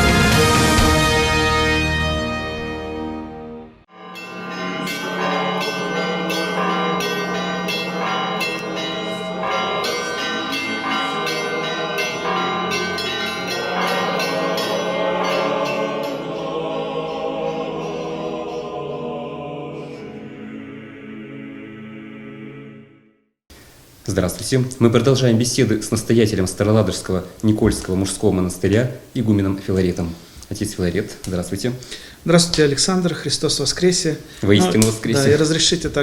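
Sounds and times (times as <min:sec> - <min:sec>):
large bell humming: 0:03.9 - 0:19.0
small church bells pealing: 0:03.9 - 0:19.0.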